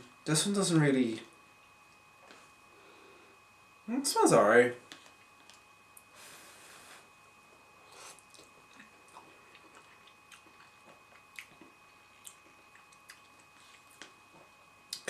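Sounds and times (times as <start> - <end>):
person chewing noodles: 7.9 - 15.0.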